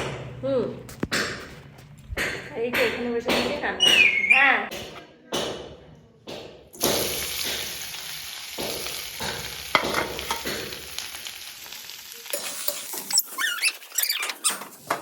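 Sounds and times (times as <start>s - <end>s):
food sizzling in hot oil: 6.8s - 14.0s.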